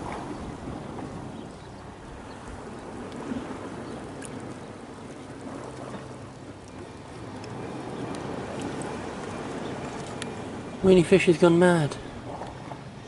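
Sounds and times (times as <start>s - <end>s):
sea water lapping on rocks: 0.0s - 13.0s
faint clicks: 6.6s - 10.4s.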